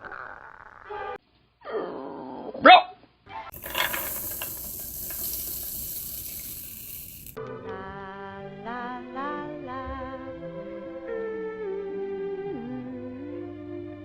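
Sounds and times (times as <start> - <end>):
steady hiss: 3.5 - 7.4
music: 7.4 - 14.0.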